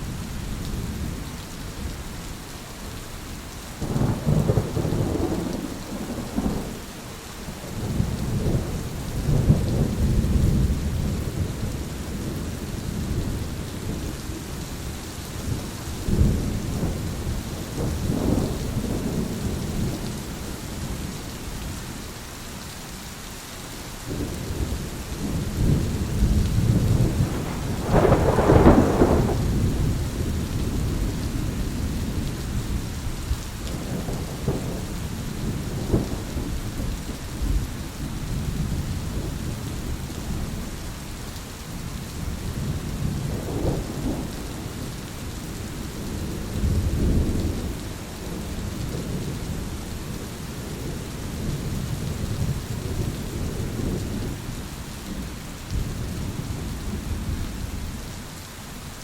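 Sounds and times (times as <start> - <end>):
rain hiss: 0.0 - 59.0
rolling thunder: 3.8 - 6.8, 7.6 - 14.1, 15.4 - 21.1, 24.1 - 40.7, 42.2 - 54.4.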